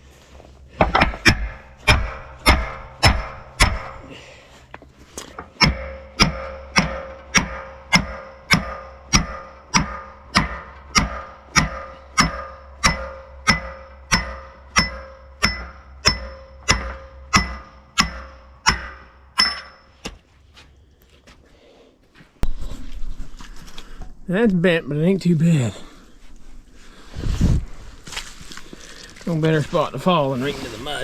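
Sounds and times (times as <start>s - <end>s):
hammer striking steel: 0.8s - 4.2s, 5.4s - 20.2s.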